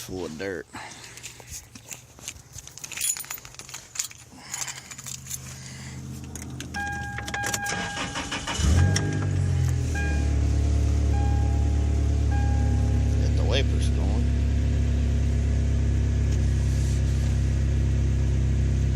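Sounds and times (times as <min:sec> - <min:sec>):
keys jangling in ignition: 0:01.1 - 0:10.3
engine cranking and running: 0:02.6 - 0:17.6
dashboard warning chime: 0:06.7 - 0:14.1.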